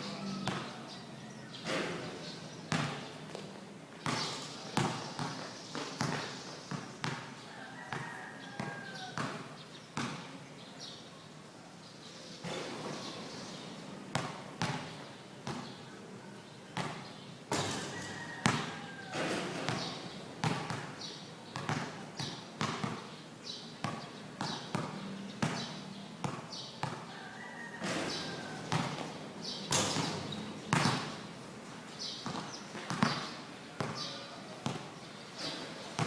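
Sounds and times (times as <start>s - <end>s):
basketball bouncing on hard court: 0.4s - 0.7s, 2.7s - 7.3s, 7.9s - 10.2s, 14.1s - 15.7s, 16.8s - 17.8s, 18.4s - 23.1s, 23.8s - 27.0s, 28.7s - 29.1s, 29.7s - 31.2s, 32.2s - 34.0s, 34.6s - 34.9s.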